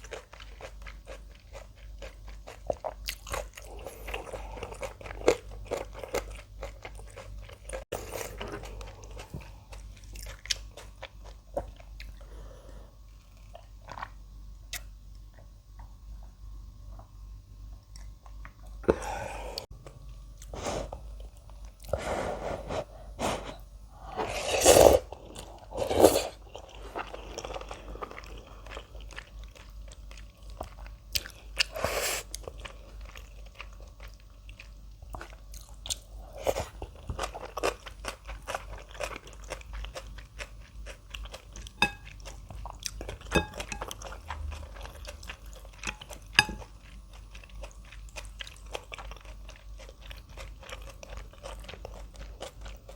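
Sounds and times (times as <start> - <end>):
crunchy chewing: 0.0 - 12.3, 24.3 - 52.9.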